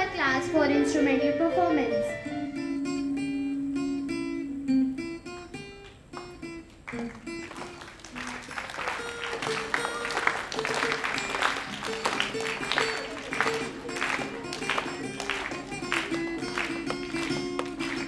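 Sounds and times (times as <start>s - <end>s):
guitar plucking single notes: 0.0s - 7.8s, 9.2s - 18.0s
people clapping: 5.7s - 18.0s.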